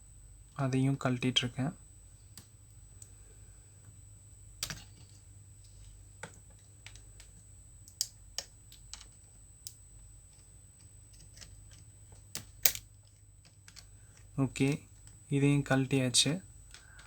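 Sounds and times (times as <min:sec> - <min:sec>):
laptop parts clicking: 0:04.6 - 0:15.2, 0:16.6 - 0:17.0.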